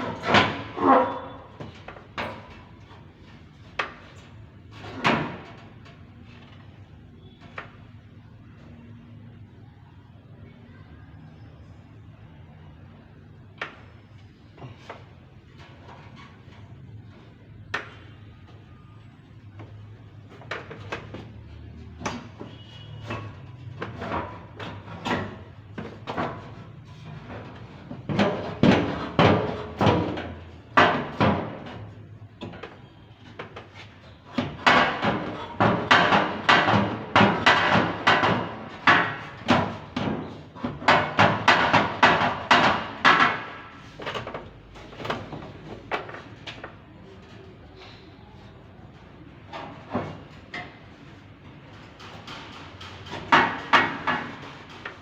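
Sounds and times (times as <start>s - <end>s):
sharp knocks and rattles: 21.9s - 46.6s, 49.4s - 55.0s.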